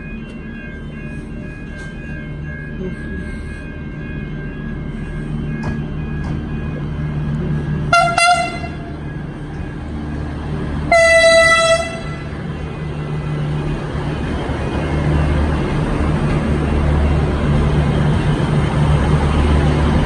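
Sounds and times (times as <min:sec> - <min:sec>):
low diesel engine hum: 0:00.0 - 0:20.0
train horn toots and blast: 0:07.9 - 0:08.9, 0:10.9 - 0:12.4.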